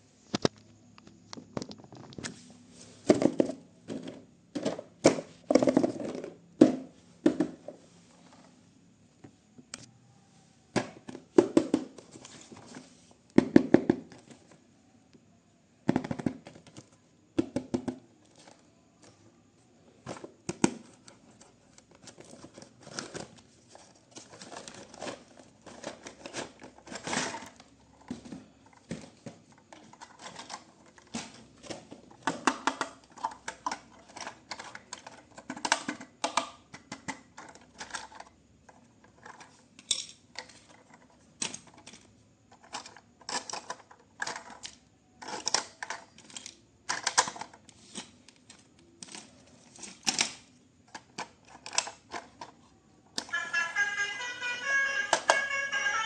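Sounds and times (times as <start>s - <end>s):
hands handling toy packaging: 20.1s - 35.8s.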